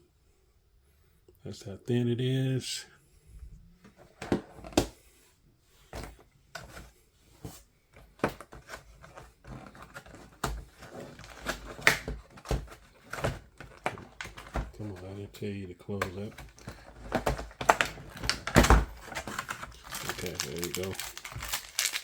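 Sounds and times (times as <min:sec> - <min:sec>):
plastic parts clicking and tapping: 0:08.0 - 0:15.2, 0:15.9 - 0:22.0
packaging rustling: 0:08.2 - 0:15.2, 0:16.1 - 0:22.0.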